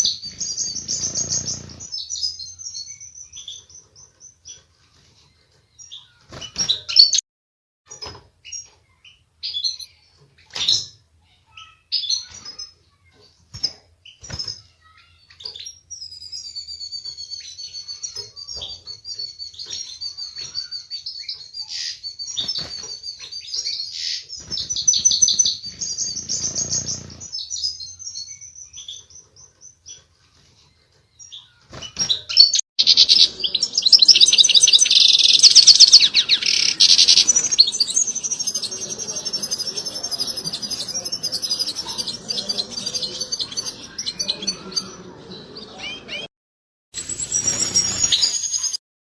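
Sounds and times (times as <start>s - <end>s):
goldfinch twittering: 32.8s - 45.0s.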